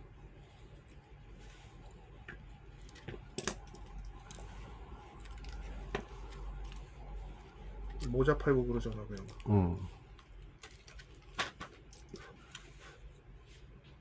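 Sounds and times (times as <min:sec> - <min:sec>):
low steady hum: 0:00.0 - 0:14.0
small tools clicking and tapping: 0:02.3 - 0:04.5.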